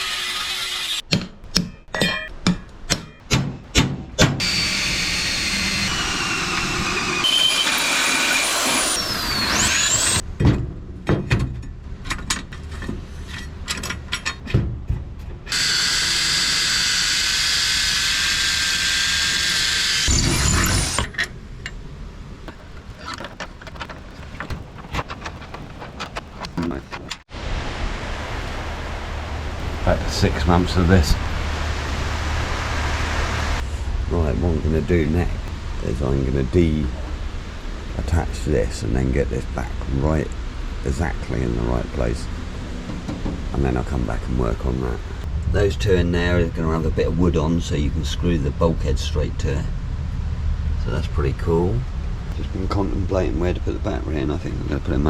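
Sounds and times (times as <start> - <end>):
angle grinder whining: 4.4 - 10.2, 15.5 - 21.2, 22.5 - 27.2
metal knocks and clanks: 10.3 - 15.5, 22.5 - 27.3, 42.6 - 43.6.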